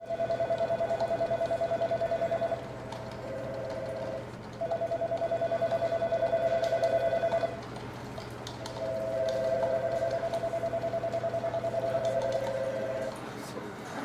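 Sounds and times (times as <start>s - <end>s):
telephone ringing with warbling trill: 3.3s - 7.5s.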